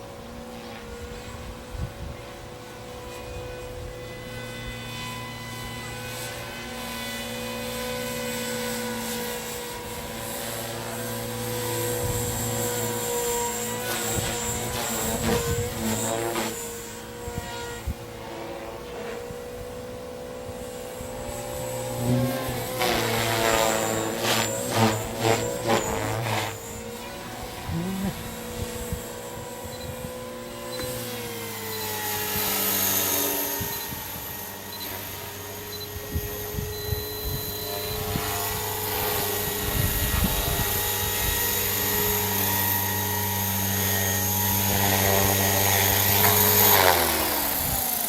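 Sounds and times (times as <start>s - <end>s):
rc helicopter whine: 0.0s - 48.0s.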